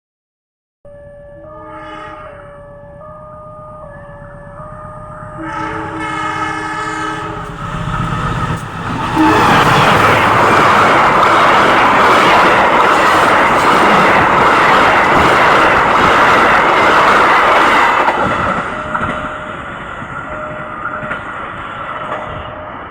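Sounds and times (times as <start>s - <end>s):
train horn chord: 1.0s - 7.9s, 8.9s - 11.0s
train passing close by: 1.0s - 22.9s.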